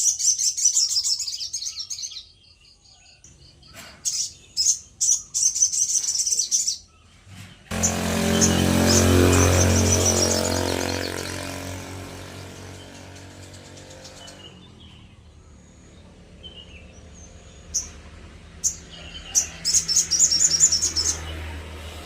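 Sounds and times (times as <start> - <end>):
songbird chirps and calls: 0.0 - 21.6
passing vehicle engine: 7.7 - 22.0.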